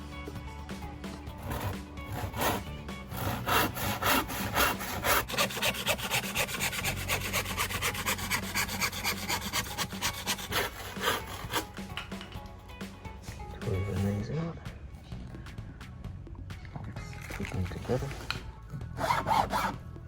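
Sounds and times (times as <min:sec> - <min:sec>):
hand saw cutting plywood: 0:01.1 - 0:12.2, 0:18.0 - 0:19.8.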